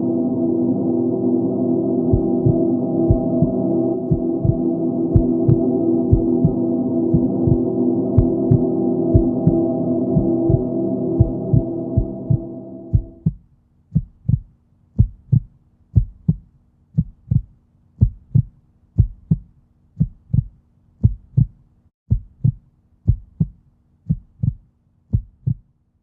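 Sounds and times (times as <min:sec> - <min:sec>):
ringing tone: 0:00.0 - 0:13.2
heartbeat thumps: 0:02.1 - 0:25.7.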